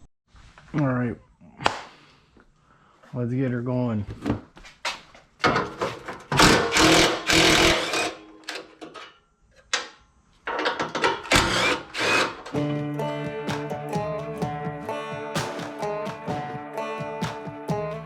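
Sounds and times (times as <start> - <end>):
loud power tool bursts: 6.3 - 8.5, 11.2 - 12.6.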